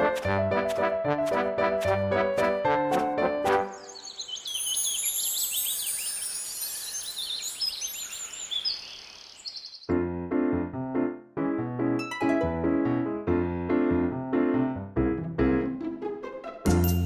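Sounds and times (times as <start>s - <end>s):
piano music: 0.0s - 4.0s, 9.9s - 17.0s
birds chirping: 3.5s - 9.9s.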